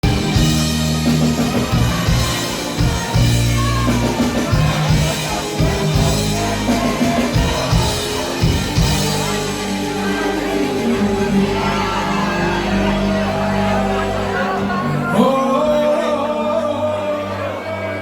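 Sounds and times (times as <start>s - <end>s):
live band playing: 0.0s - 18.0s.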